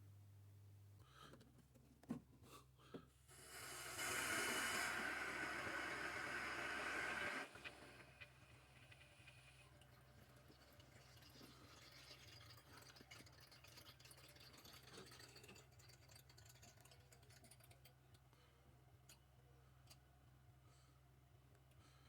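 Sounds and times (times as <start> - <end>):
faint hiss: 3.2 - 12.8.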